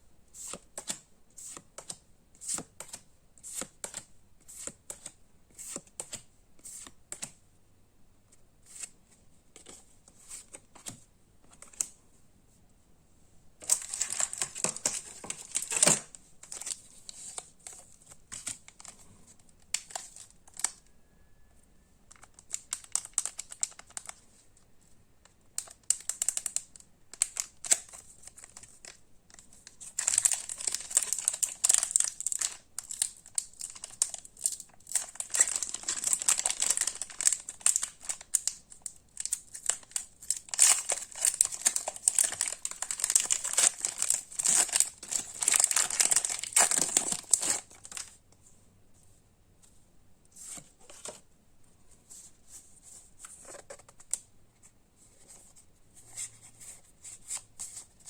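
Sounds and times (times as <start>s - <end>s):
foil wrapper crinkling: 13.6s - 16.8s, 29.9s - 48.1s.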